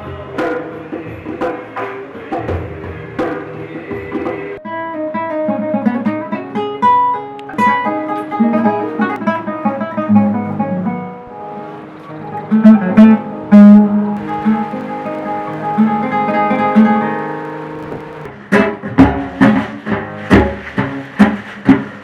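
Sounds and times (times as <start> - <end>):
acoustic guitar music: 4.5 - 21.5.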